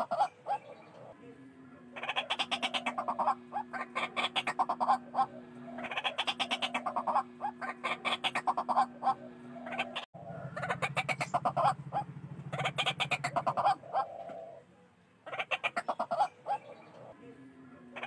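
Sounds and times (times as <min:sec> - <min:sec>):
waterhen calling: 0:02.0 - 0:14.6.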